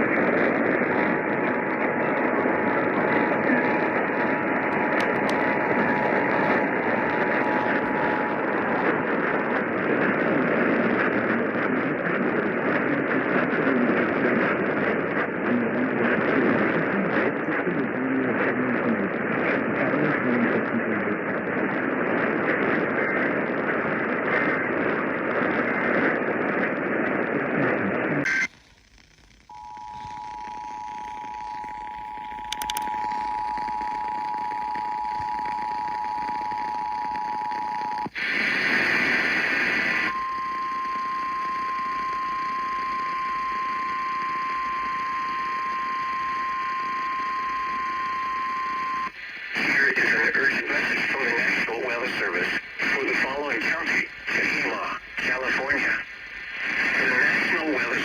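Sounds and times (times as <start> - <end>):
faint wavering audio: 0.0 - 10.2, 28.4 - 58.0
radio static hiss: 0.0 - 58.0
click: 32.5 - 33.0.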